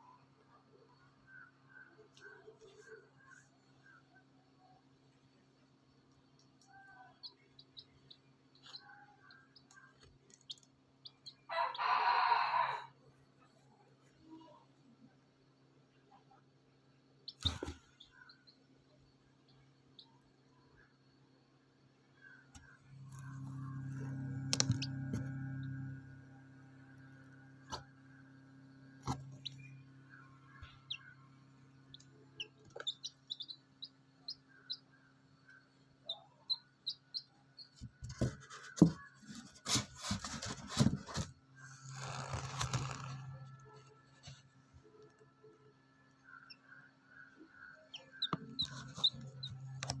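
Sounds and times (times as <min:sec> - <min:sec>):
chicks peeping: 0:07.2 - 0:12.0, 0:23.0 - 0:26.0, 0:29.0 - 0:39.0, 0:47.5 - 0:50.0
incubator fan humming: 0:22.8 - 0:34.8.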